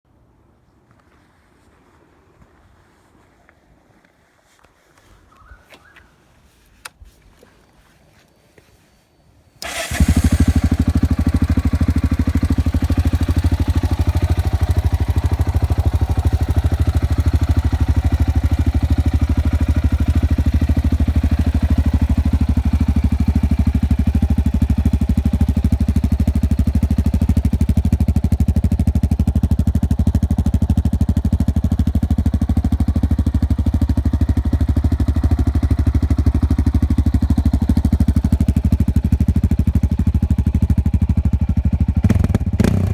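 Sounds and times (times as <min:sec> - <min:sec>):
motorcycle engine starting and idling: 0:09.6 - 0:42.9.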